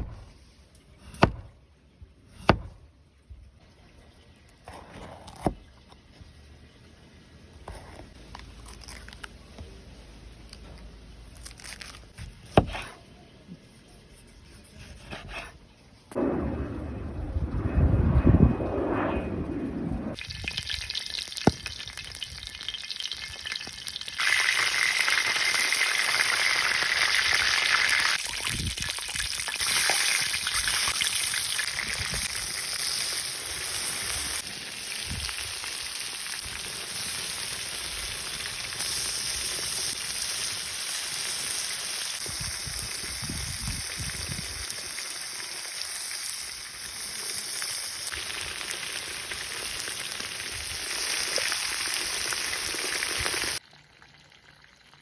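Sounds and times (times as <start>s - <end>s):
food sizzling in pan: 28.9s - 53.6s.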